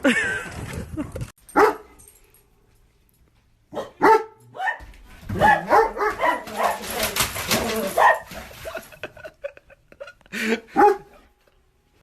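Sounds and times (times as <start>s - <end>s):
dog barking: 1.5s - 1.9s, 3.7s - 8.5s, 10.7s - 11.2s.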